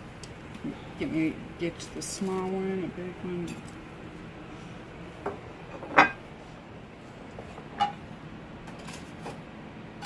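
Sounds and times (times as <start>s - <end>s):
utensils clinking against dishes: 8.7s - 9.4s.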